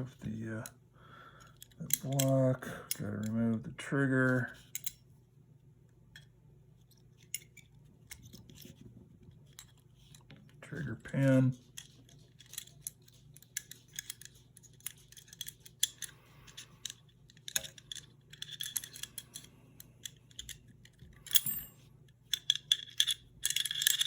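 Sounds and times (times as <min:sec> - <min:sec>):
small steel parts clicking and scraping: 0:01.4 - 0:03.6, 0:04.3 - 0:05.0, 0:06.1 - 0:08.8, 0:09.5 - 0:10.4, 0:11.1 - 0:24.0.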